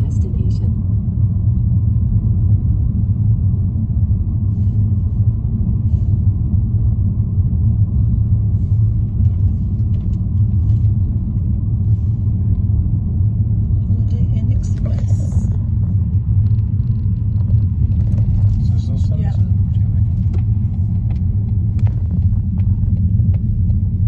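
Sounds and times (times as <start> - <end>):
moving vehicle rumble: 0.0 - 24.0.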